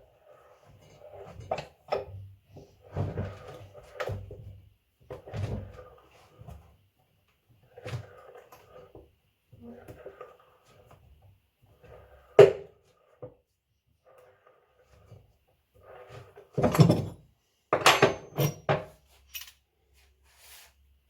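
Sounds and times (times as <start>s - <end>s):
tools knocking on metal: 17.8s - 18.9s.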